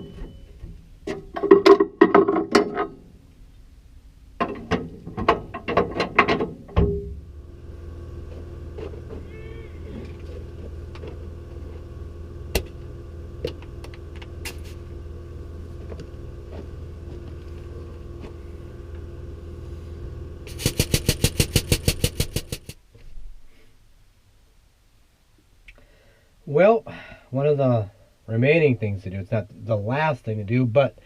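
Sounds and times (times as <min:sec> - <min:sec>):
machine hum: 0:02.7 - 0:22.8
rapid loud knocking: 0:20.5 - 0:22.8
sharp clicks: 0:20.5 - 0:22.8.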